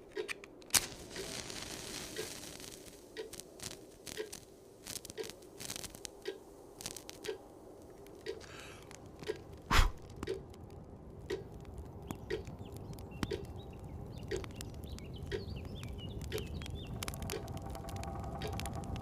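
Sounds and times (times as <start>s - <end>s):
wood fire crackling: 0.0s - 19.0s
clock ticking: 0.1s - 0.5s, 3.2s - 3.4s, 4.1s - 4.4s, 6.1s - 6.4s, 7.0s - 7.5s, 8.1s - 9.6s, 10.2s - 10.5s, 11.3s - 11.6s, 12.3s - 12.5s, 13.2s - 13.5s, 14.3s - 14.6s, 16.2s - 17.6s, 18.3s - 19.0s.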